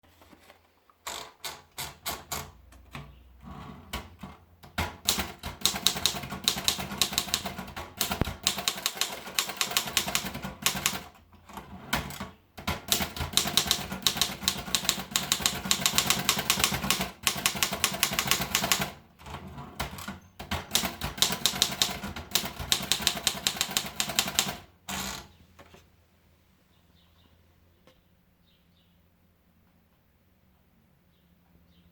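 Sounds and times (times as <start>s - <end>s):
manual typewriter typing: 1.1s - 25.3s.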